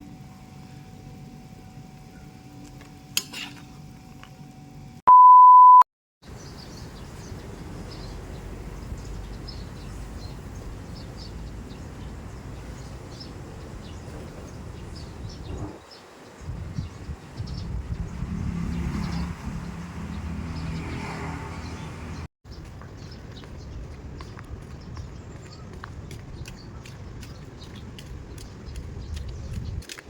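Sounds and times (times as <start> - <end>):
electronic beep: 5.1 - 5.8.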